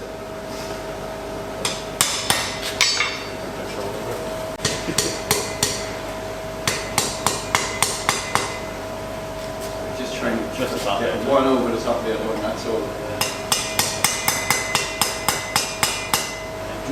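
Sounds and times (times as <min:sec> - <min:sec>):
hammer striking iron on anvil: 0:01.6 - 0:03.4, 0:04.6 - 0:06.0, 0:06.6 - 0:08.8, 0:13.2 - 0:16.6.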